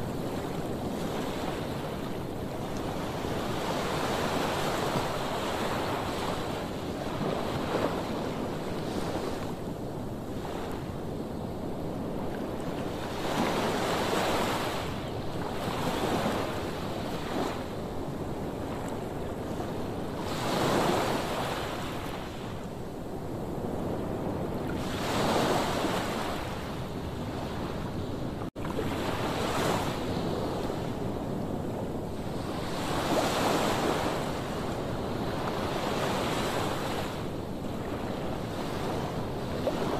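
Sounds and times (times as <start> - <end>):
wind on microphone: 0.0 - 39.9.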